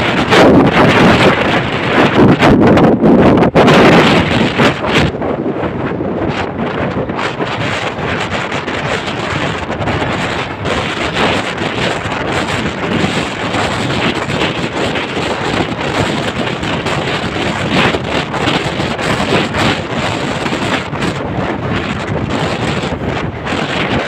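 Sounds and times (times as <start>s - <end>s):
vehicle rumble: 0.0s - 24.0s
wind buffeting microphone: 0.0s - 24.0s.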